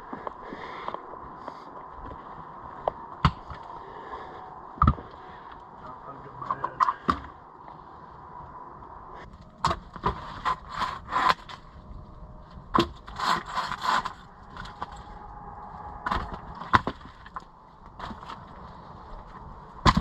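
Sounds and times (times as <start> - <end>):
dry wood knocking and cracking: 2.9 - 3.7, 4.8 - 5.7, 9.3 - 11.6, 12.6 - 15.0, 16.0 - 18.6, 19.8 - 20.0.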